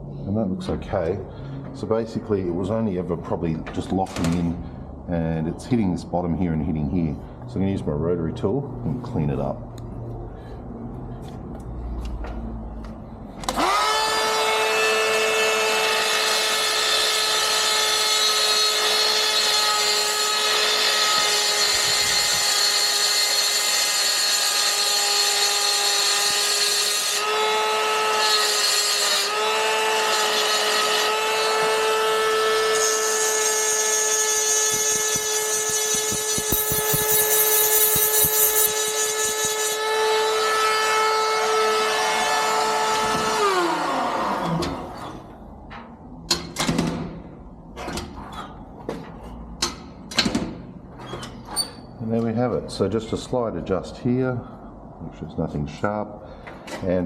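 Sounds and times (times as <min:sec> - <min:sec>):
rotary tool whining: 0:13.4 - 0:45.3
harsh metal grinding: 0:16.6 - 0:45.4.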